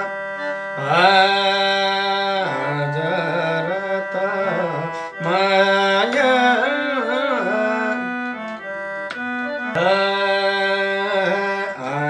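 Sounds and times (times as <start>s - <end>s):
held instrumental notes: 0.0s - 12.0s
man singing folk song: 0.8s - 8.1s, 9.8s - 12.0s.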